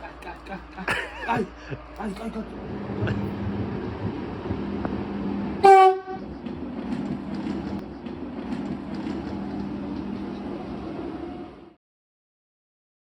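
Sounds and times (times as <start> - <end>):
train rumbling: 0.0 - 11.8
train horn blast: 5.6 - 6.3.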